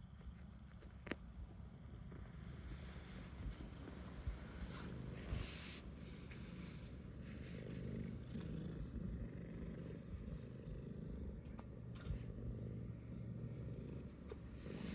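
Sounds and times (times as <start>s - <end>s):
cat purring: 4.2s - 14.9s.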